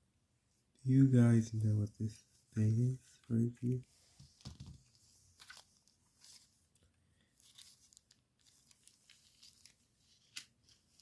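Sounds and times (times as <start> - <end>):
plastic parts rustling and ticking: 3.1 - 11.0.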